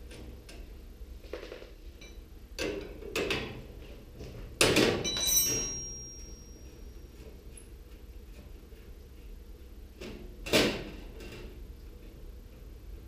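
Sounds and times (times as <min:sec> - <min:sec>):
metallic clatter with ring: 0:05.0 - 0:07.7.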